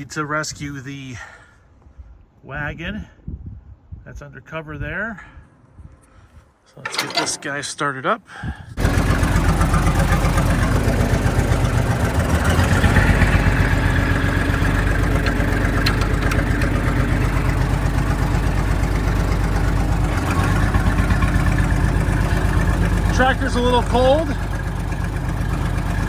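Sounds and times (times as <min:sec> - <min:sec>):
tractor engine idling: 0:06.8 - 0:07.7, 0:08.8 - 0:26.0.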